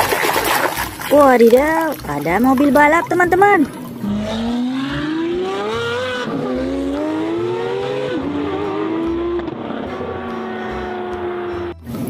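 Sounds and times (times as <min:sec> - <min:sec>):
race car engine accelerating: 0:03.9 - 0:12.0.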